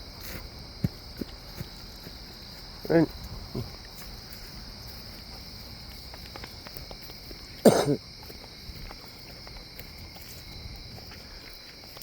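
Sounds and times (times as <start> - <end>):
man coughing: 7.6 - 8.0.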